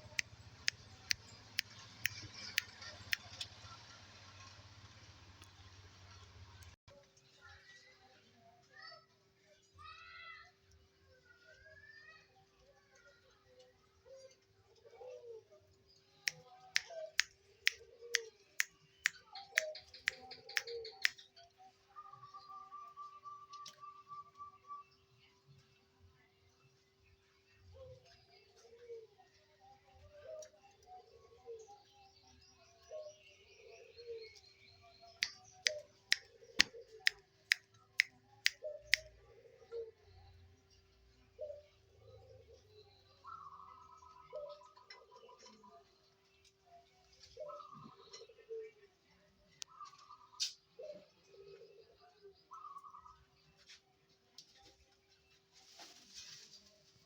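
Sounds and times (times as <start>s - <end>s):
dove cooing: 14.8s - 15.6s, 19.4s - 21.1s, 35.7s - 37.1s, 38.6s - 40.1s, 47.4s - 48.9s, 50.8s - 53.1s.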